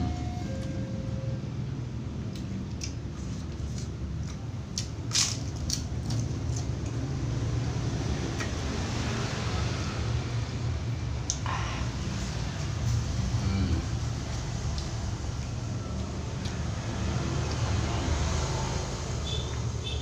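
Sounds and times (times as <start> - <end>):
food crunching: 2.3 - 7.1
chewing with wet squishes: 14.0 - 18.6.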